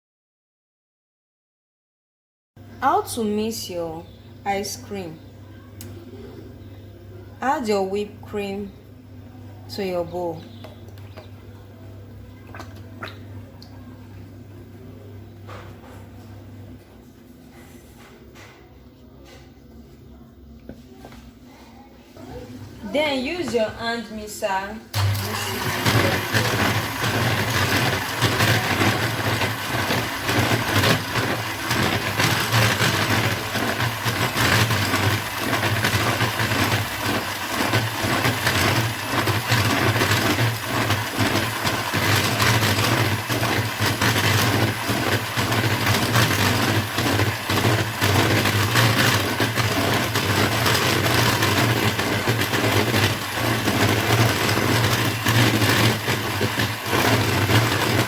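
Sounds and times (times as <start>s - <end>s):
electric hand mixer whipping cream: 25.0s - 58.0s.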